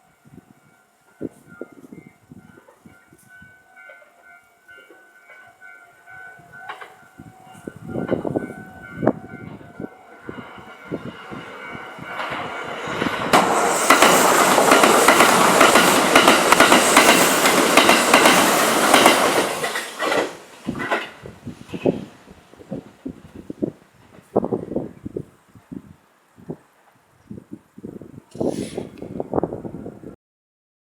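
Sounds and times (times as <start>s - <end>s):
electric train passing: 0.0s - 25.1s
wind rumbling on microphone: 7.2s - 19.6s, 20.6s - 30.2s.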